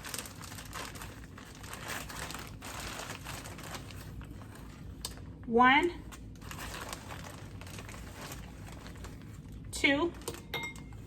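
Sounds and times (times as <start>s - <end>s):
plastic crinkling and rustling: 0.0s - 11.0s.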